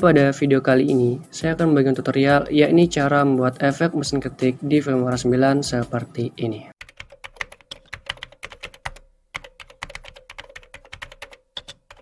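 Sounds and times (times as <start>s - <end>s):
typewriter keys clacking: 6.8s - 12.0s.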